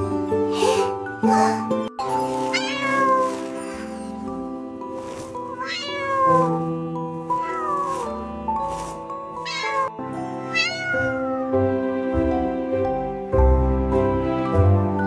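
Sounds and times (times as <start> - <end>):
background music with held notes: 0.0 - 15.0
cat meowing: 2.4 - 3.9, 5.5 - 6.6, 7.3 - 11.6.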